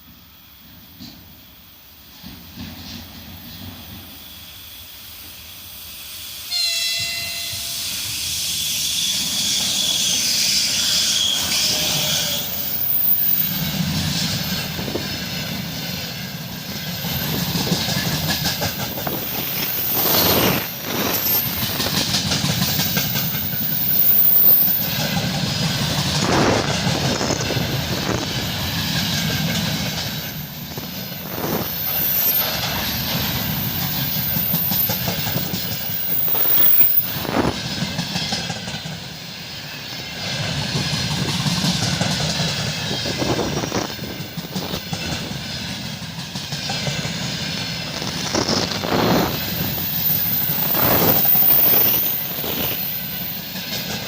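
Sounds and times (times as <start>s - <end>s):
train rumbling and rattling: 0.0s - 54.0s
horn-like tone: 6.5s - 8.3s.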